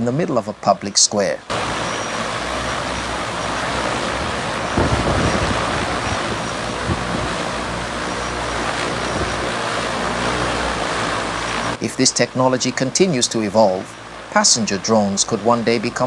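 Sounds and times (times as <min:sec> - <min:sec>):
low hum: 0:01.3 - 0:15.9
drone rotors whooshing: 0:01.4 - 0:16.0
wind buffeting microphone: 0:01.5 - 0:11.9.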